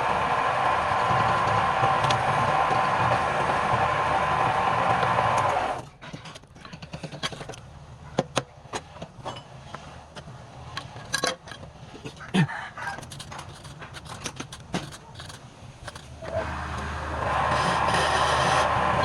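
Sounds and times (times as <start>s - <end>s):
wood lathe running: 0.0s - 5.8s, 16.2s - 19.0s.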